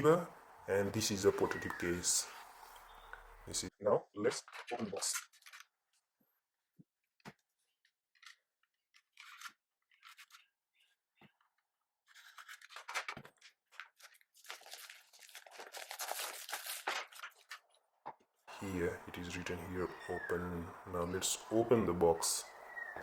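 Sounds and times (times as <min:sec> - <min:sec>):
wrapping crinkling and tearing: 0:04.5 - 0:05.7, 0:08.1 - 0:10.6, 0:12.0 - 0:17.8.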